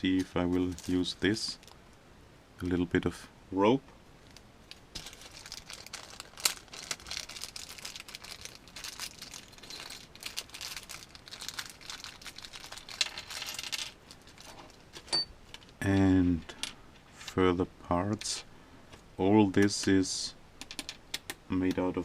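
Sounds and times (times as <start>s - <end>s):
plastic packaging crinkling: 0.2s - 1.8s, 4.2s - 15.8s.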